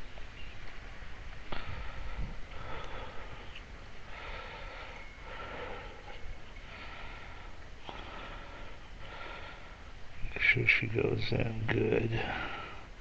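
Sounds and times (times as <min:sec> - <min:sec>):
man breathing through nose: 0:01.5 - 0:10.0.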